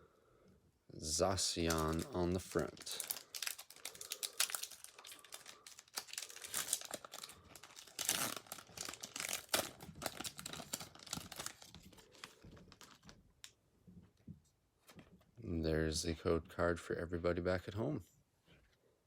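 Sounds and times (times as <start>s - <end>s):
foil pack tearing and crinkling: 1.6s - 13.1s.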